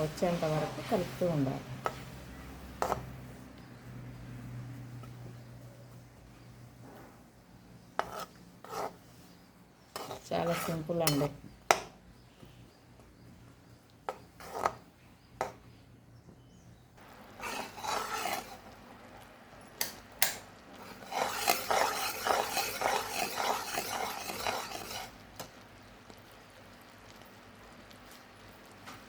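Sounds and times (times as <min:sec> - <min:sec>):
spoon scraping a pan: 0:00.0 - 0:07.2, 0:07.8 - 0:12.0, 0:14.0 - 0:15.7, 0:17.0 - 0:18.9, 0:19.8 - 0:25.6.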